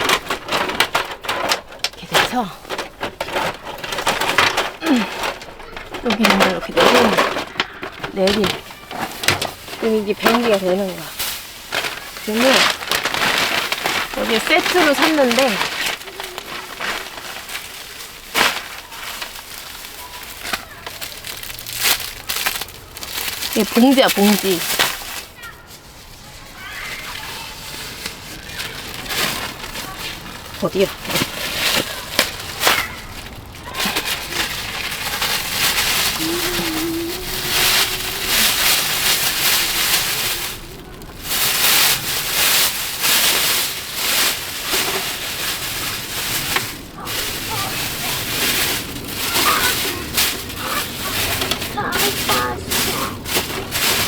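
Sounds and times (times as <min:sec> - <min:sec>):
plastic bag crinkling: 0:00.0 - 0:54.0.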